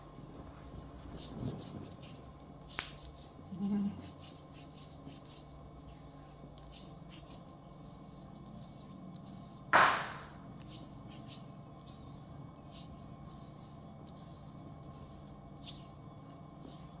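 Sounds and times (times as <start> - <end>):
hands rubbing skin and clothing: 0.7 - 17.0
person humming low: 3.5 - 4.2.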